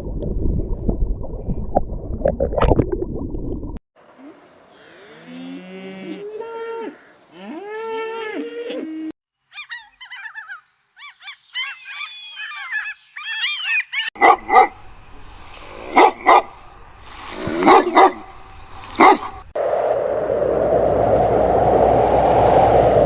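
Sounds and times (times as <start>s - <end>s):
dog whimpering and yipping: 11.6s - 14.6s
dog barking: 14.2s - 14.8s, 15.9s - 16.6s, 17.6s - 18.3s, 19.0s - 19.4s.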